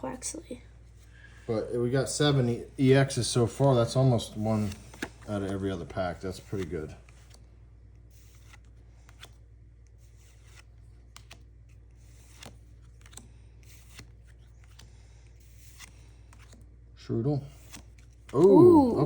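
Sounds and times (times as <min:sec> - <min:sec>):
steady low hum: 0:00.0 - 0:17.6
cards rustling and clicking: 0:03.4 - 0:16.8, 0:17.6 - 0:18.5.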